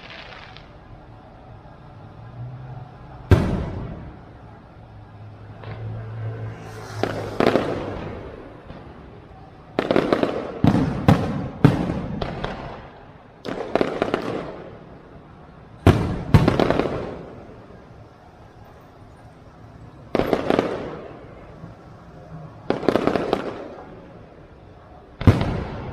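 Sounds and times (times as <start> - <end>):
fireworks bursting: 0.0 - 2.2, 2.8 - 25.9.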